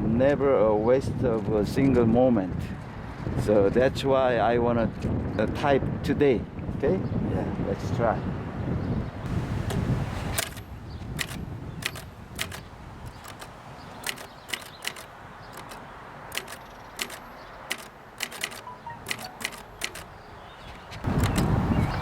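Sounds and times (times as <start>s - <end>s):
long mechanical noise: 9.4s - 20.3s
manual typewriter key strikes: 10.3s - 20.2s, 21.1s - 21.6s.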